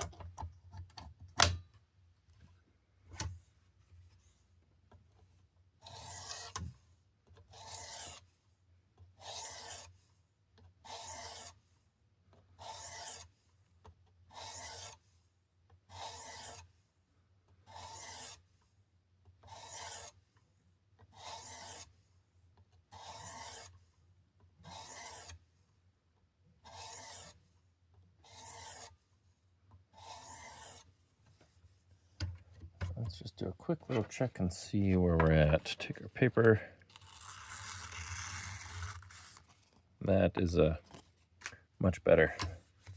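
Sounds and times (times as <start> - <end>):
sharpening stone rasping on knife: 5.9 - 6.5, 7.6 - 8.2, 9.2 - 9.9, 10.9 - 11.5, 12.6 - 13.2, 14.4 - 15.0, 15.9 - 16.6, 17.7 - 18.4, 19.5 - 20.2, 21.2 - 21.9, 23.0 - 23.7, 24.6 - 25.4, 26.7 - 27.4, 28.2 - 28.9, 30.0 - 30.9.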